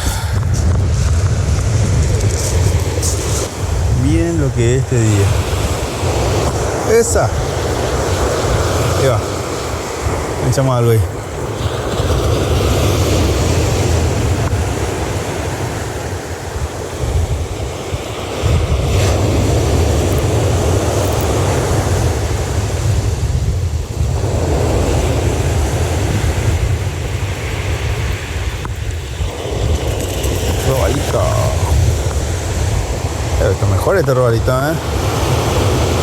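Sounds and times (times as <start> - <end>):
waves breaking on beach: 0.0 - 36.0
wind buffeting microphone: 0.0 - 36.0.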